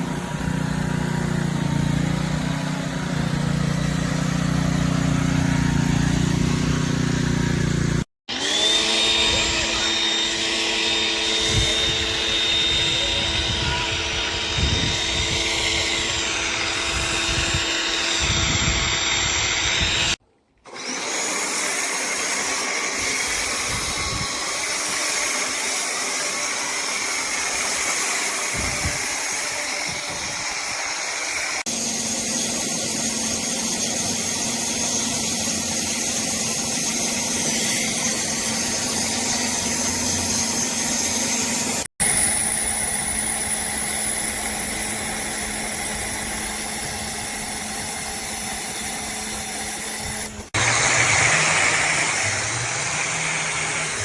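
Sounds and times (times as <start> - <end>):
pressure washer running: 0.0 - 54.0.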